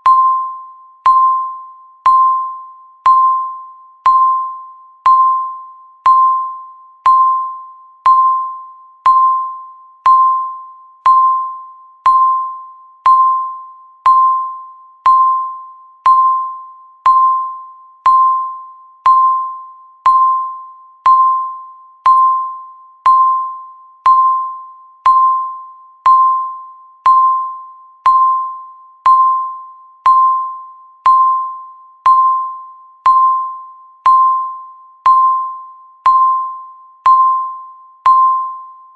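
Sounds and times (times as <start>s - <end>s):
timer beeping: 0.0s - 38.9s.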